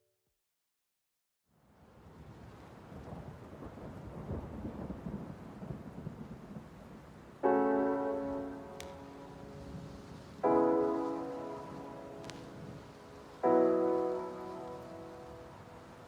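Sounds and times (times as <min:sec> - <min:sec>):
rain and thunder ambience: 0:01.9 - 0:16.0
piano chord: 0:07.4 - 0:16.0.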